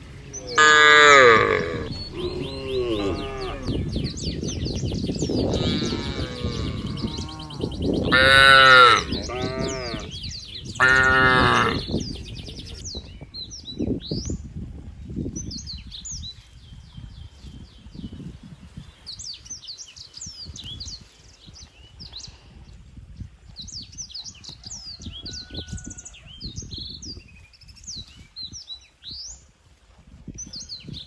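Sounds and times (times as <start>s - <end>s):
low rustle: 0.0s - 7.6s
birds chirping: 0.0s - 14.3s
cattle mooing: 0.4s - 3.9s, 5.4s - 10.1s, 10.8s - 11.9s.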